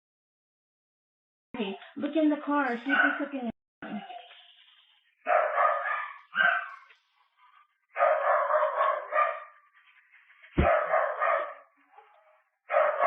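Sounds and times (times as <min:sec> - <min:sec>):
dog barking: 0:02.8 - 0:03.3, 0:05.2 - 0:06.9, 0:07.9 - 0:09.6, 0:10.6 - 0:13.0.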